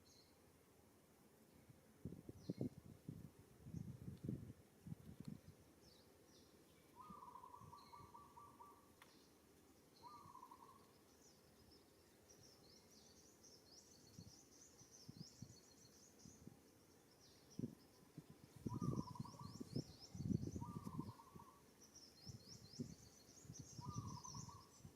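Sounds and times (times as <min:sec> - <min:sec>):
birds chirping: 0:05.8 - 0:24.9
buzzy bird call: 0:07.0 - 0:08.9, 0:10.0 - 0:10.8, 0:18.6 - 0:21.7.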